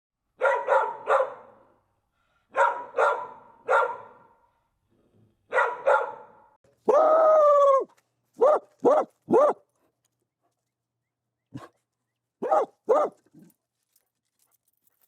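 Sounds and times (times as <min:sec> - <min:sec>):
dog barking: 0:00.4 - 0:01.7, 0:02.5 - 0:04.5, 0:05.5 - 0:06.6, 0:08.4 - 0:09.7, 0:12.4 - 0:13.4.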